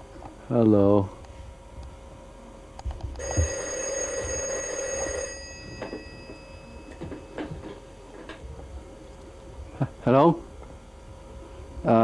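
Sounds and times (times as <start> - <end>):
telephone bell ringing: 3.2 - 7.6.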